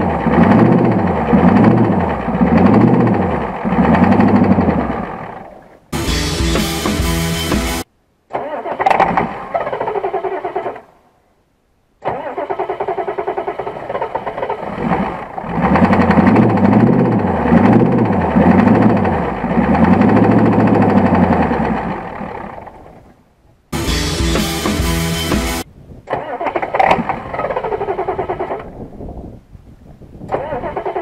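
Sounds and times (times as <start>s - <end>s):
starter cranking engine: 0.0s - 7.0s, 8.3s - 10.9s, 12.0s - 23.0s, 25.4s - 28.8s, 30.3s - 31.0s
diesel engine running unevenly: 0.0s - 7.8s, 14.3s - 22.8s.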